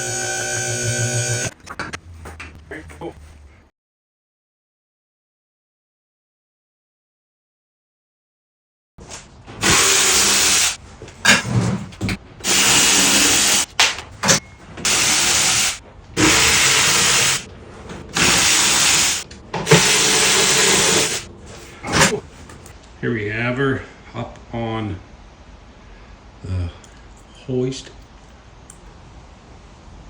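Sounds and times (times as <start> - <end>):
electric motor running in bursts: 0.0 - 1.5, 9.6 - 10.8, 12.4 - 13.7, 14.9 - 17.5, 18.1 - 22.1.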